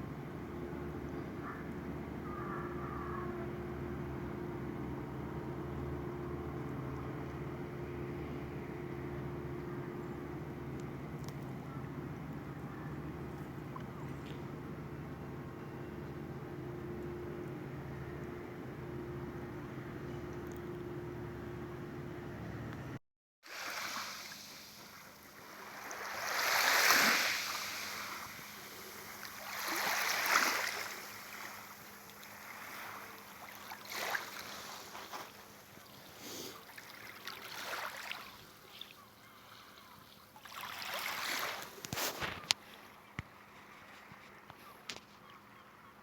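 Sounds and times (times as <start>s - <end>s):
sea waves washing ashore: 23.4s - 42.5s.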